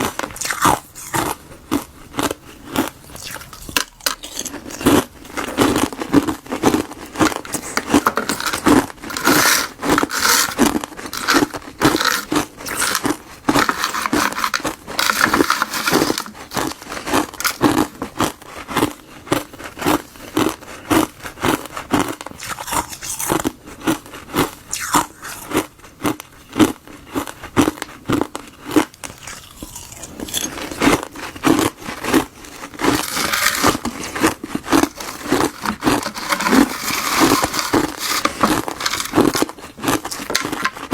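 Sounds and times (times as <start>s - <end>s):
ice crunching: 3.2s - 18.0s, 31.8s - 40.9s
crackling: 32.8s - 40.9s.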